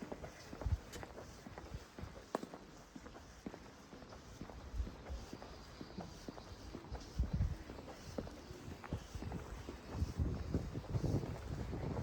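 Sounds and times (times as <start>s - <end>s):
faint background noise: 0.0s - 12.0s.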